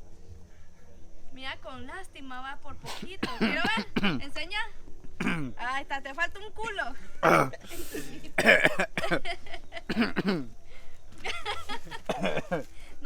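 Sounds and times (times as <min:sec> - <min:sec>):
person coughing: 0:02.8 - 0:04.2, 0:05.2 - 0:05.5, 0:07.2 - 0:09.2, 0:09.9 - 0:10.5, 0:12.0 - 0:12.6
people laughing: 0:07.2 - 0:10.4, 0:11.2 - 0:12.9.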